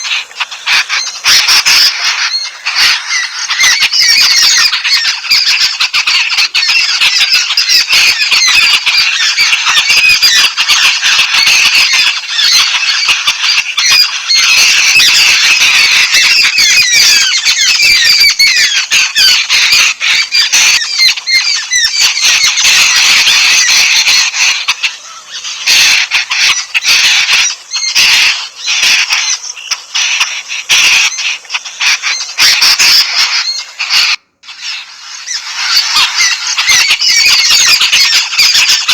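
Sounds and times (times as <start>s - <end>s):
babblers chattering: 0.0s - 38.9s.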